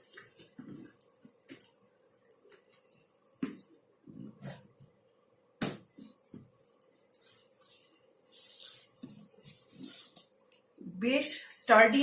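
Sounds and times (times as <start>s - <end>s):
cardboard rustling and scraping: 0.0s - 4.9s, 5.8s - 10.4s.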